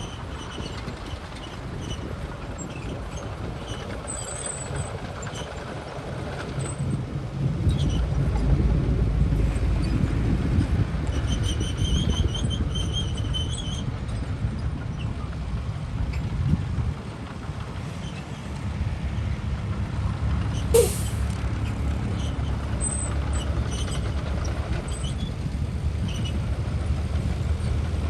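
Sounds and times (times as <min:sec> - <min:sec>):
high-pitched pulsing squeal: 0:20.8 - 0:21.3
heavy diesel machinery rumbling: 0:20.8 - 0:28.0.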